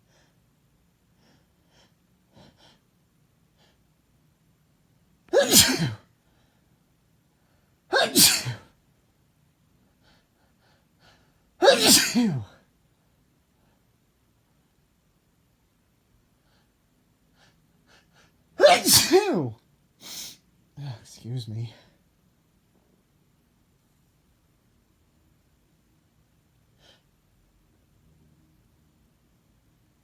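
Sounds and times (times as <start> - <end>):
man sneezing: 5.3 - 6.1, 7.9 - 8.7, 11.6 - 12.6, 18.6 - 20.4.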